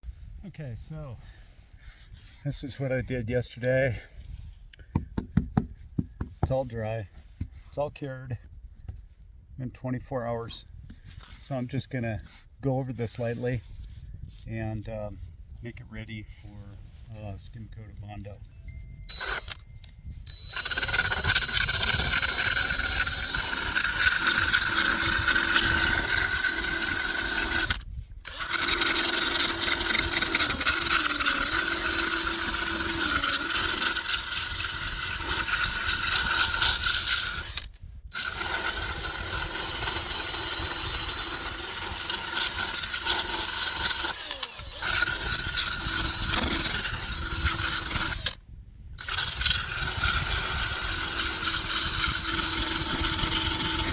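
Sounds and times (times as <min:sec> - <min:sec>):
power sander grinding: 0:19.1 - 0:19.6, 0:20.3 - 0:48.4, 0:49.0 - 0:53.9.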